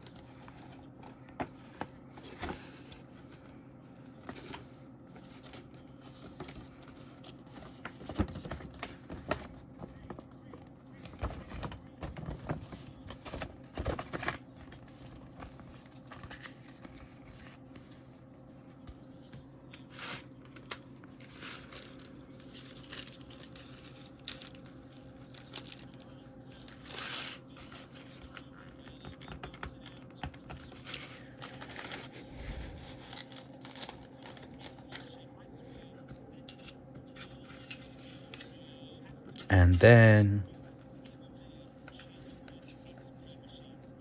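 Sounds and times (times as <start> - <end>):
paper packaging crinkling: 30.6 - 35.2.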